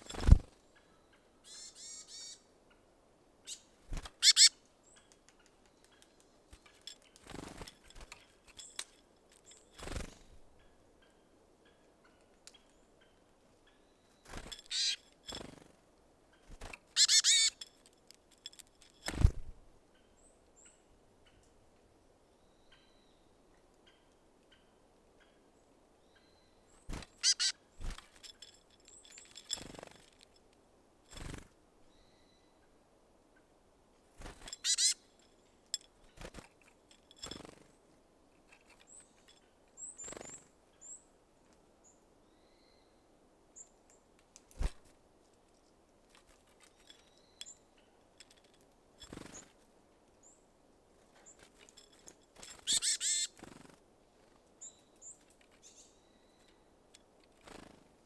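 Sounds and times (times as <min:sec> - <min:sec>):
small birds calling: 0:00.1 - 0:08.8, 0:09.4 - 0:15.6, 0:16.3 - 0:17.7, 0:26.1 - 0:29.8, 0:34.2 - 0:36.4, 0:38.5 - 0:41.1, 0:51.1 - 0:53.7
birds knocking and pecking: 0:05.1 - 0:10.2, 0:14.3 - 0:15.6, 0:16.4 - 0:19.5, 0:26.9 - 0:30.4, 0:34.2 - 0:37.7, 0:46.1 - 0:49.5.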